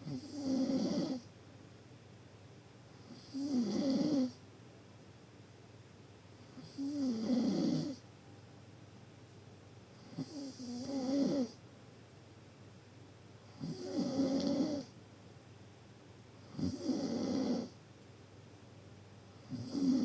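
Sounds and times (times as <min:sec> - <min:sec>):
deep snoring: 0:00.0 - 0:01.3, 0:03.1 - 0:04.4, 0:06.6 - 0:08.0, 0:10.0 - 0:11.6, 0:13.5 - 0:14.9, 0:16.4 - 0:17.8, 0:19.5 - 0:20.0.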